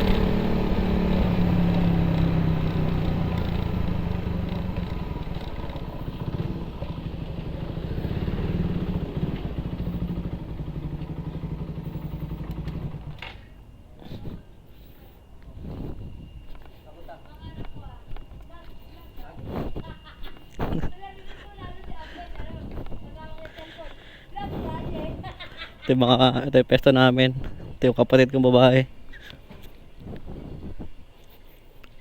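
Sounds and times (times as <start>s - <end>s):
motorcycle engine through open exhaust: 0.0s - 25.4s.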